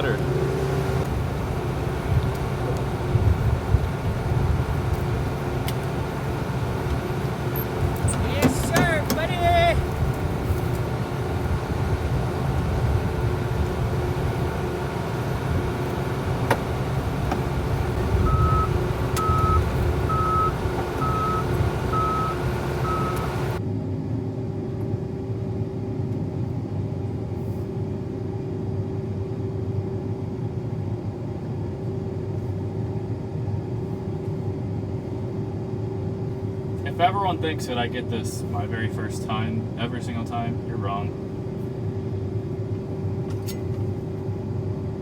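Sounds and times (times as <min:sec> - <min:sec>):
combine engine running: 0:00.0 - 0:23.6
reverse alarm beeping: 0:18.1 - 0:23.6.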